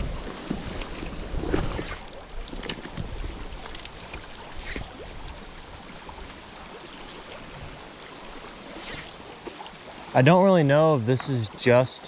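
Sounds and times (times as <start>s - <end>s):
creek running over stones: 0.1s - 12.0s
brief high hiss: 4.6s - 4.9s, 8.8s - 9.1s.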